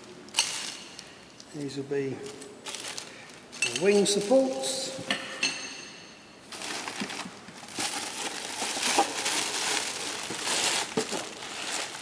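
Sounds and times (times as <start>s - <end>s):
packaging wrap rustling: 2.2s - 4.9s, 6.5s - 12.0s.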